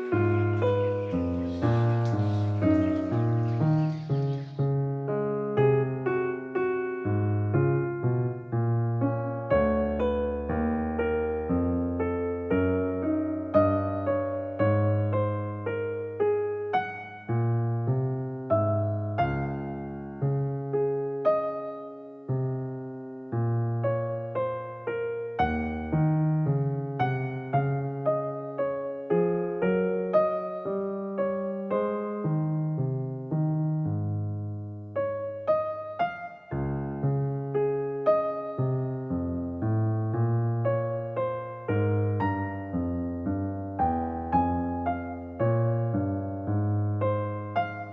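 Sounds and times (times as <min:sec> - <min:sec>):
electric piano chords: 0:00.0 - 0:47.9.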